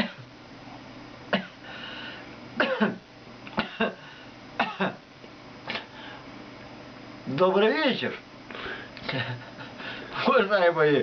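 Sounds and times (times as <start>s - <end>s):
man coughing: 0.0s - 0.3s, 1.3s - 1.6s, 2.6s - 5.0s.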